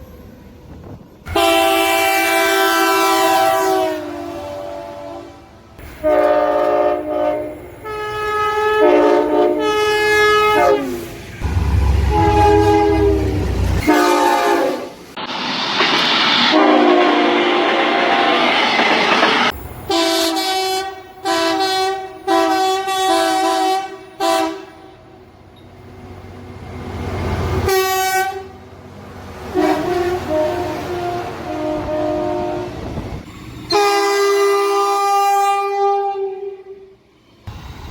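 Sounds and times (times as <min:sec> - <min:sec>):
wheels rushing on rail: 0:00.0 - 0:37.9
train air horn blasts: 0:01.3 - 0:11.1, 0:12.0 - 0:15.0, 0:16.4 - 0:18.6, 0:19.9 - 0:25.2, 0:27.6 - 0:28.6, 0:29.5 - 0:33.0, 0:33.6 - 0:36.9.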